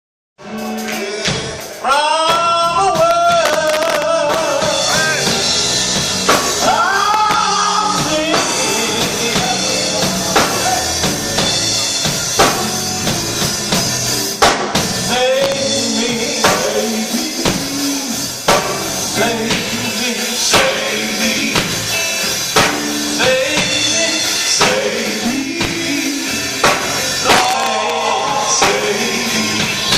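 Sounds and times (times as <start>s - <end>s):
person singing: 0.4s - 5.4s, 6.6s - 11.4s, 15.1s - 18.4s, 19.1s - 22.0s, 23.0s - 29.9s
drums hitting accents: 0.4s - 29.9s
gospel band playing: 0.4s - 29.9s.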